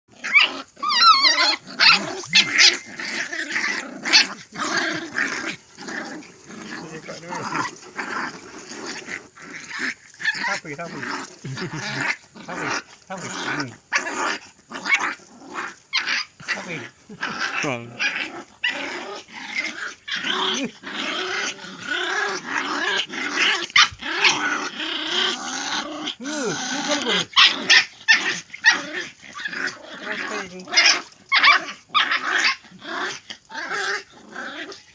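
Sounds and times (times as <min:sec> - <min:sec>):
dogs snarling and growling: 0:00.1 - 0:34.9
dog yelping: 0:00.2 - 0:05.4, 0:17.5 - 0:25.4, 0:26.4 - 0:32.6.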